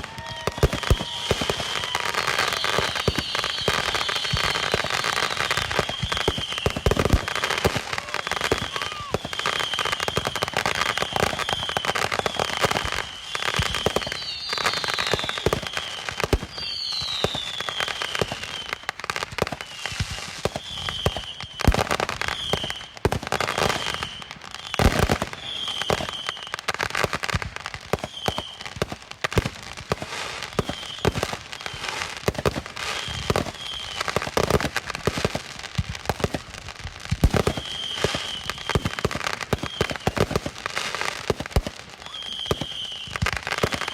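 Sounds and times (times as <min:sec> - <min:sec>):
fireworks bangs and crackles: 0:00.0 - 0:43.9
high whistling tones: 0:00.1 - 0:13.5.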